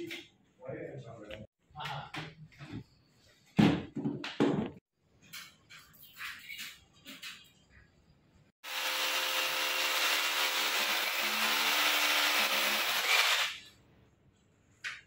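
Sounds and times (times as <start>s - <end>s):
power tool whining: 8.6s - 13.6s.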